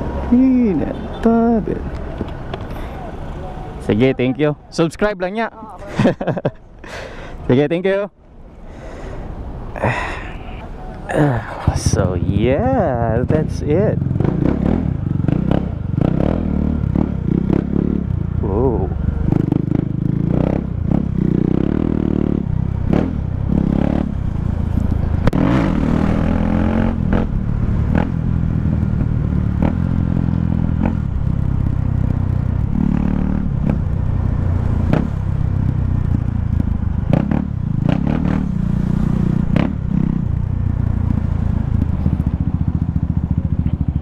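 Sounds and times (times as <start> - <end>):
motorcycle engine revving: 11.7 - 44.0.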